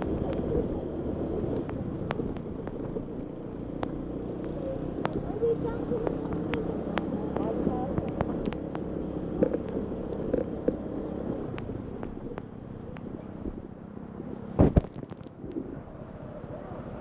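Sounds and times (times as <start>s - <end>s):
scooter engine droning: 0.0s - 17.0s
sharp clicks and knocks: 1.5s - 3.1s, 6.0s - 10.8s, 14.6s - 15.4s
loud thump: 14.6s - 14.9s.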